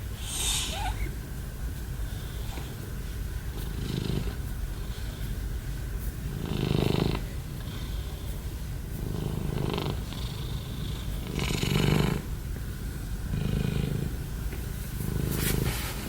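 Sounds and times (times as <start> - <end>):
cat snoring: 0.2 - 1.1, 3.6 - 4.4, 6.3 - 8.3, 9.0 - 12.3, 13.2 - 14.2, 15.0 - 16.0.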